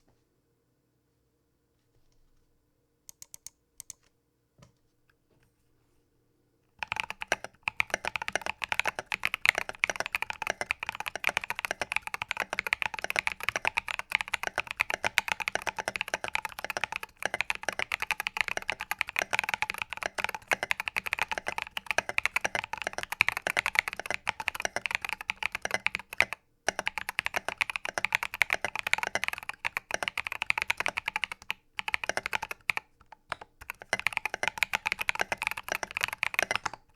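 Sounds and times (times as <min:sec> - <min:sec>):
mechanical keyboard typing: 0:03.1 - 0:04.1, 0:06.8 - 0:36.9.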